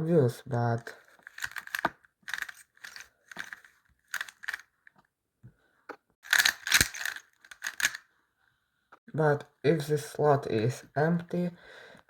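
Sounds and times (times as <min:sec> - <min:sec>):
puzzle cube plastic clicks: 0:01.2 - 0:04.6, 0:06.2 - 0:08.0.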